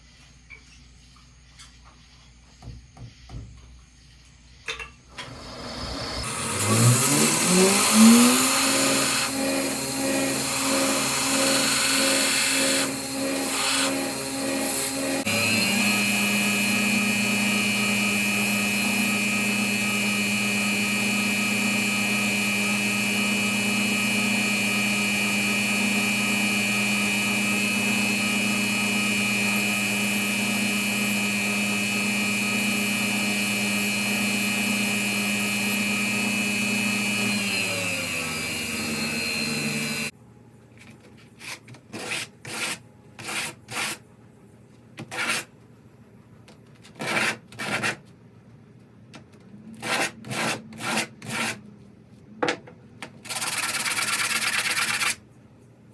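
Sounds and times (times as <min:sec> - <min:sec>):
power tool spinning down: 0:05.1 - 0:40.1.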